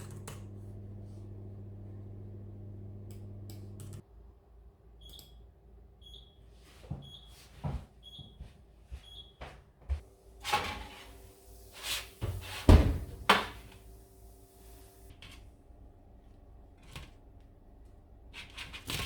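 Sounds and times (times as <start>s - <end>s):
electronic appliance beeps: 6.0s - 6.4s, 7.0s - 7.4s, 8.0s - 8.4s, 9.0s - 9.4s
cupboard door opening and shutting: 12.2s - 13.7s.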